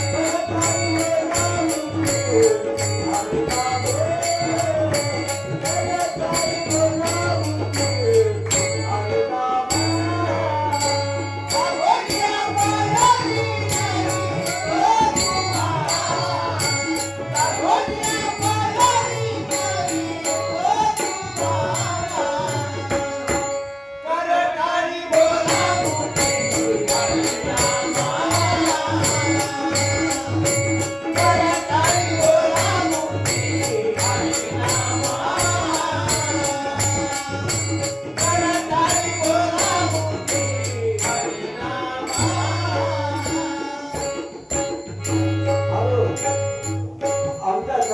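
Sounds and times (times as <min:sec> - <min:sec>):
man singing: 0:00.0 - 0:46.4, 0:47.0 - 0:47.9
tabla: 0:00.0 - 0:47.9.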